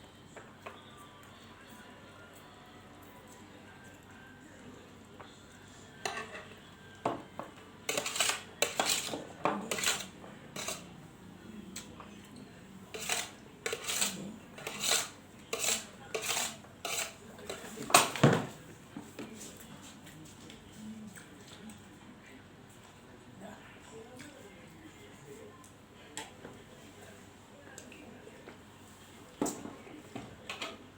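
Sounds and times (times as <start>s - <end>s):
utensils clinking and scraping plate: 6.0s - 6.6s, 7.4s - 10.9s, 12.8s - 18.4s.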